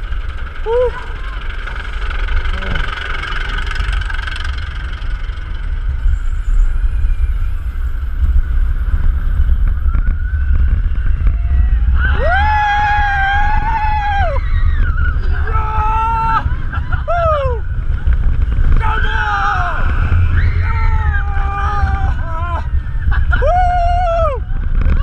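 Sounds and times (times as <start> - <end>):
roller coaster train rumbling: 0.0 - 25.0
wind on microphone: 6.0 - 25.0.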